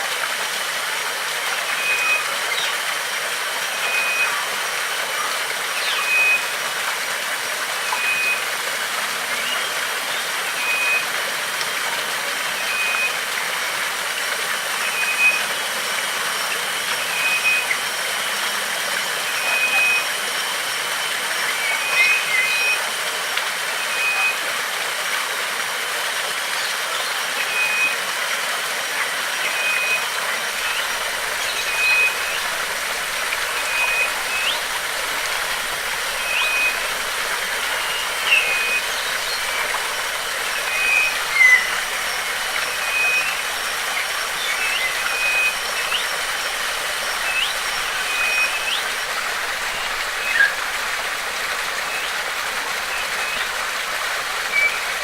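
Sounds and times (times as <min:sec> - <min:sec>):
stream water rushing: 0:00.0 - 0:55.0
thin high whine: 0:01.6 - 0:24.6, 0:26.6 - 0:55.0
bird chirps: 0:05.8 - 0:06.4, 0:29.4 - 0:50.7, 0:52.8 - 0:53.6, 0:54.4 - 0:55.0.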